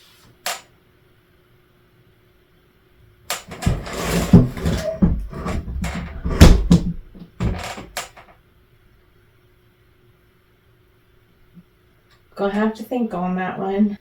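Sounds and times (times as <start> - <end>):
ceiling pieces falling and rattling: 3.3 - 8.3.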